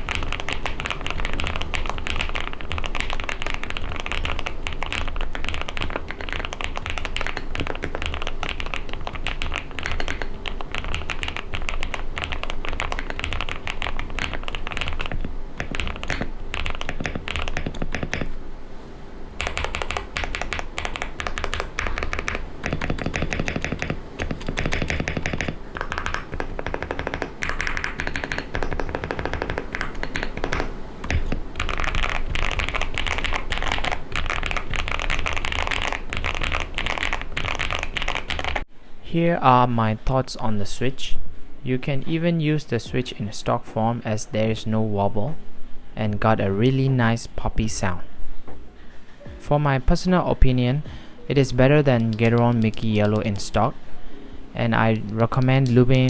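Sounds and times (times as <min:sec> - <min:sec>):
mechanical keyboard typing: 0:00.0 - 0:18.4, 0:19.4 - 0:38.7, 0:51.8 - 0:53.8, 0:54.5 - 0:56.0.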